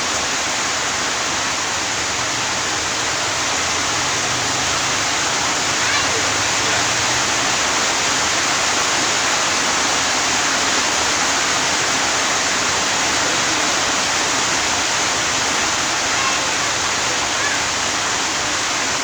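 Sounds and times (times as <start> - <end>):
steady rushing hiss: 0.0 - 19.0.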